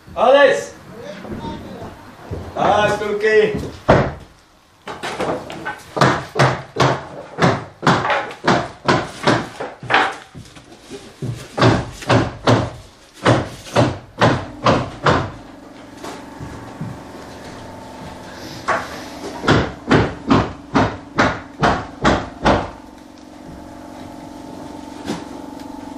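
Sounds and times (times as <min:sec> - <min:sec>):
rapid knocks: 0:02.3 - 0:10.2, 0:11.2 - 0:15.4, 0:18.6 - 0:22.8
steady hum with held tones: 0:14.2 - 0:25.9.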